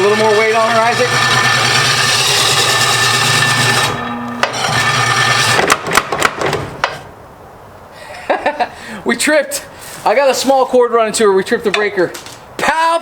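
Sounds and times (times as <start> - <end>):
motor humming: 0.0 - 6.0
power hammer pounding: 0.0 - 7.0.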